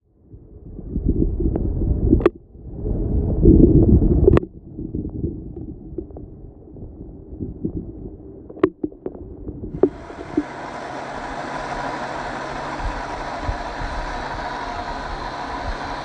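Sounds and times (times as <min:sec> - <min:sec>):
rc car electric motor whining: 0:09.8 - 0:16.0.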